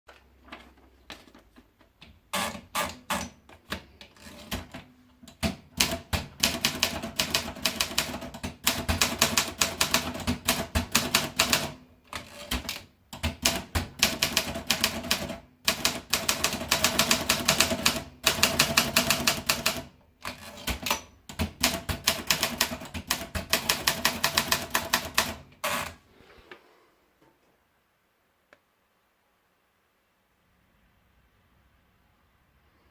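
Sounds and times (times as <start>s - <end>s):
typewriter keys clacking: 4.2s - 25.9s.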